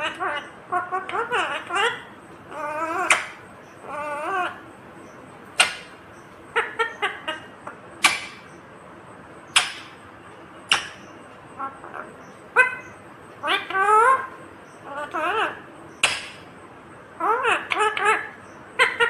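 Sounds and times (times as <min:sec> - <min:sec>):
parakeet shrieking: 0:00.0 - 0:04.6, 0:06.5 - 0:08.4, 0:11.6 - 0:16.4, 0:17.2 - 0:19.0
parakeet chattering: 0:00.0 - 0:08.6, 0:09.5 - 0:10.0, 0:10.6 - 0:16.6, 0:17.2 - 0:19.0.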